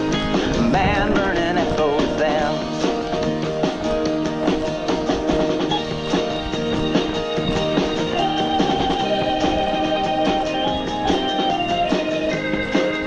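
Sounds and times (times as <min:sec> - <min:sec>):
drum kit beat: 0:00.0 - 0:13.0.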